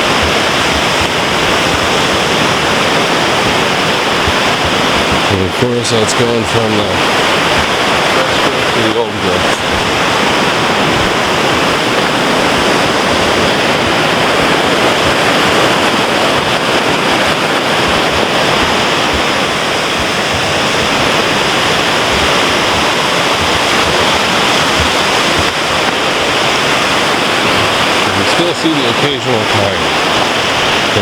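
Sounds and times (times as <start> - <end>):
creek water rushing: 0.0 - 31.0.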